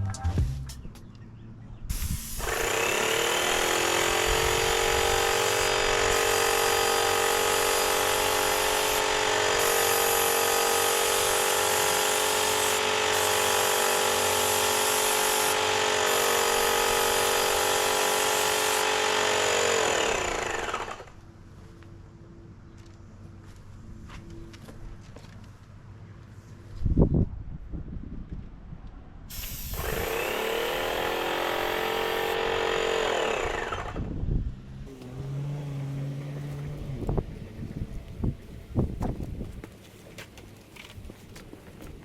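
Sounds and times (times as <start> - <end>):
paint sprayer motor and pump: 1.9 - 21.2, 29.3 - 34.2.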